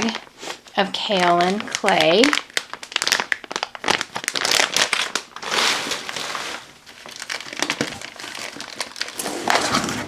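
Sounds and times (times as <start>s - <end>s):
packaging crinkling and rustling: 0.0s - 0.3s, 0.9s - 10.0s.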